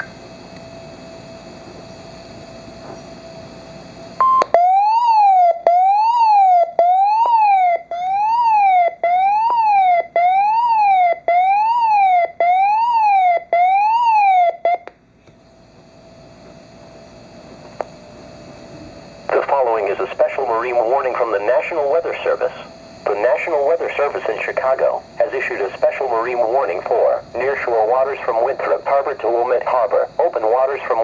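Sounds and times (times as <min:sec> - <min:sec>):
sweeping siren-like alarm tone: 0:00.8 - 0:14.9
weather radio beep: 0:04.2 - 0:04.6, 0:19.3 - 0:31.0
faint radio hiss: 0:15.6 - 0:31.0.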